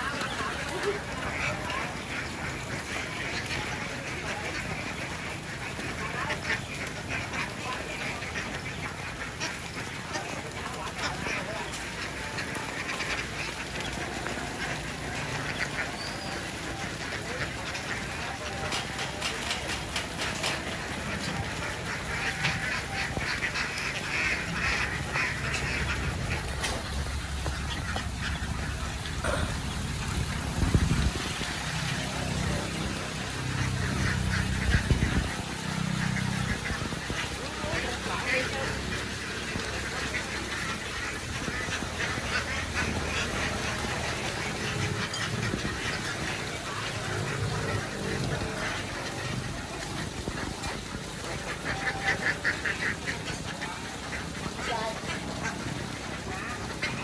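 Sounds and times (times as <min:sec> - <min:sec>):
ducks quacking: 0:00.0 - 0:57.0
steady low rumble: 0:22.1 - 0:37.2.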